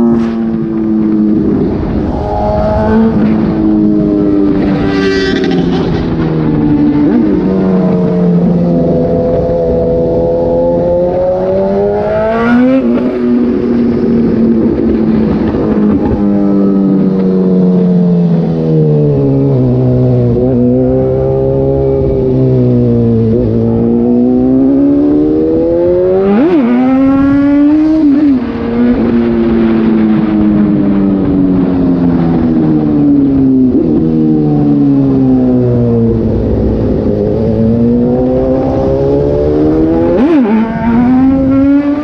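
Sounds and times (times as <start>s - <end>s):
motorcycle engine revving: 0.0s - 42.0s.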